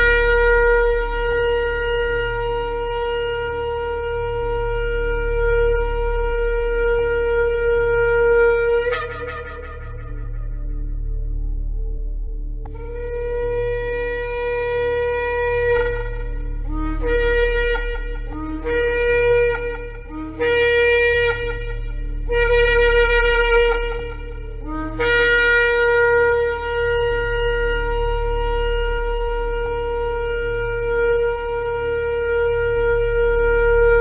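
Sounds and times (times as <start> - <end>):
ram's horn blasts: 12.6 - 34.0.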